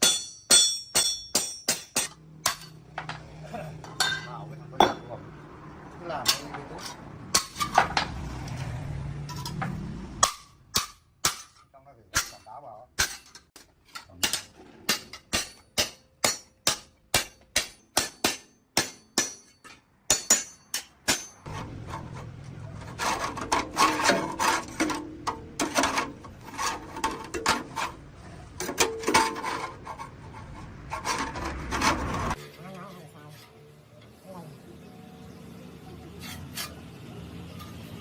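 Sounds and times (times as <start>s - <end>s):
sharp hammering blows: 0.0s - 3.0s, 9.7s - 11.6s, 12.2s - 21.8s
rasping scrape of filing: 36.2s - 36.8s.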